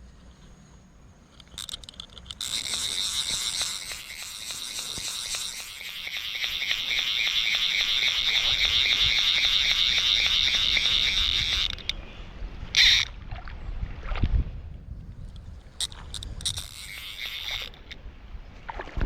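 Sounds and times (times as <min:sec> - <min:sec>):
fly reel clicking: 0:01.2 - 0:12.1, 0:12.7 - 0:13.1, 0:15.1 - 0:18.0.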